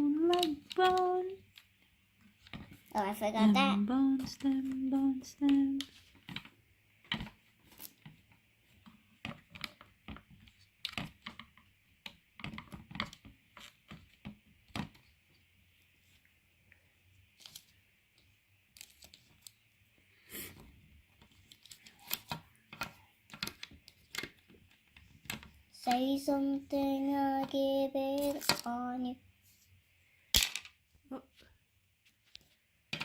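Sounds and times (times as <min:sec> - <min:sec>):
plastic pieces clicking and tapping: 0:00.0 - 0:02.9, 0:04.2 - 0:15.1, 0:21.2 - 0:26.2, 0:27.3 - 0:28.8, 0:30.3 - 0:30.8, 0:32.3 - 0:33.0.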